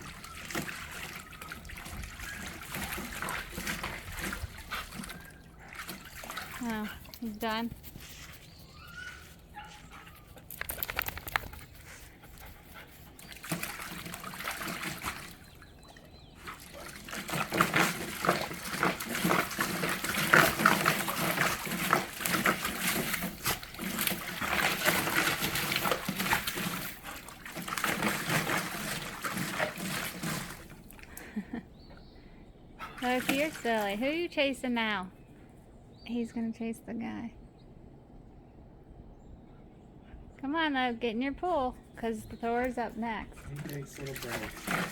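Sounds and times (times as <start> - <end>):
dogs vocalizing: 0.0 - 7.3, 8.1 - 32.1
water splashing and sloshing: 0.0 - 34.5, 42.4 - 44.9.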